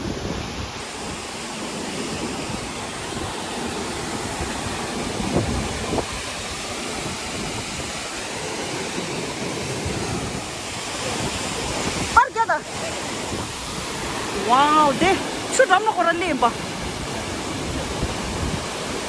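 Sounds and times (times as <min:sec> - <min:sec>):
waterfall roaring: 0:00.0 - 0:19.0.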